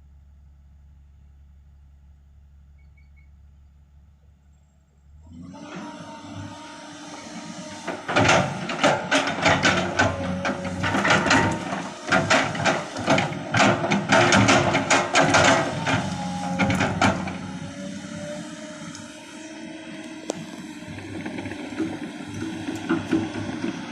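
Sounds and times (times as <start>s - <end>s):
diesel engine running: 3.4s - 23.9s
sharp knocks and clatter: 7.6s - 17.5s.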